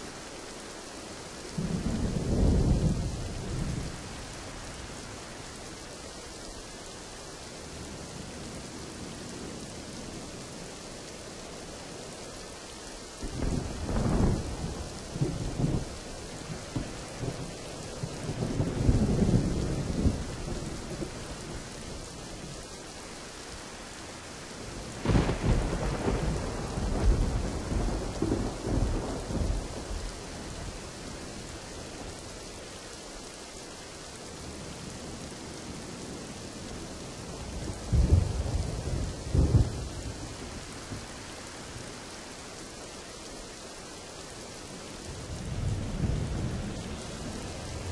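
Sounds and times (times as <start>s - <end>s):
steady rain: 0.0s - 47.9s
thunder rumbling and cracking: 25.0s - 30.9s, 37.6s - 41.1s.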